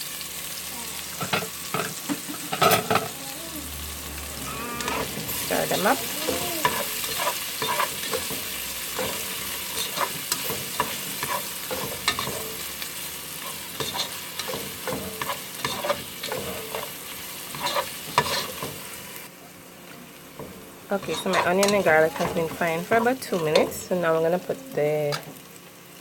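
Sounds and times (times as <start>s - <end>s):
onions sizzling in oil: 0.0s - 26.0s
utensil scraping a pot: 4.6s - 8.4s, 15.2s - 16.9s, 17.5s - 18.6s, 20.9s - 23.9s.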